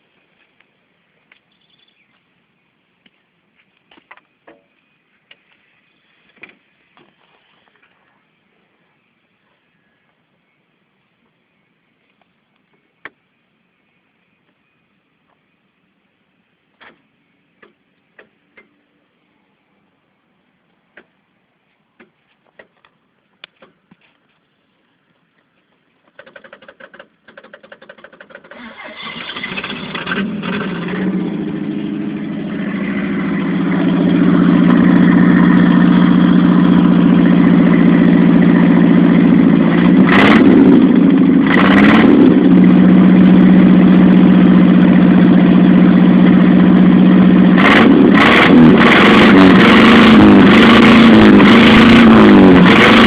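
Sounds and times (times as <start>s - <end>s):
starter motor cranking: 26.1s - 30.9s
car engine rumbling and revving: 26.1s - 53.0s.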